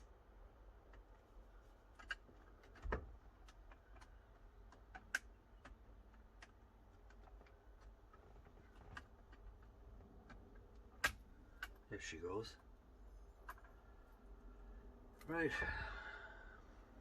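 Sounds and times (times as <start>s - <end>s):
small clicks and taps: 1.9s - 11.9s.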